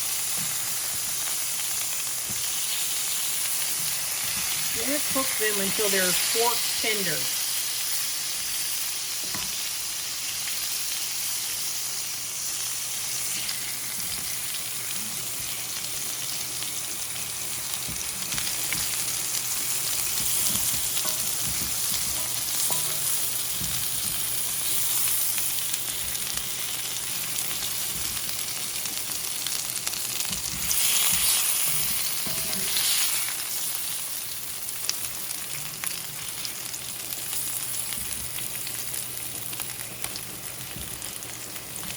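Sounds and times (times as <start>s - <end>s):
vegetables sizzling in a pan: 0.0s - 41.9s.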